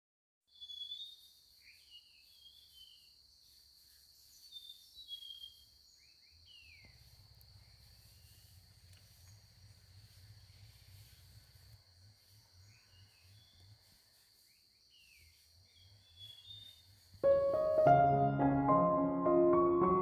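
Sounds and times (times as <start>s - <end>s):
high insect drone: 1.2s - 17.9s
birds chirping: 12.2s - 20.0s.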